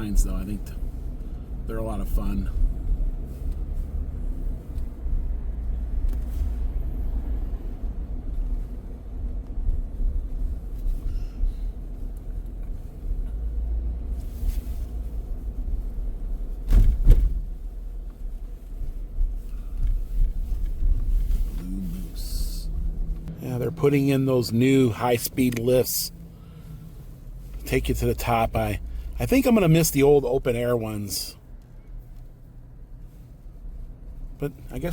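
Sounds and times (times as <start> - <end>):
road and engine rumble: 0.0 - 34.9
loud thump: 16.6 - 17.4.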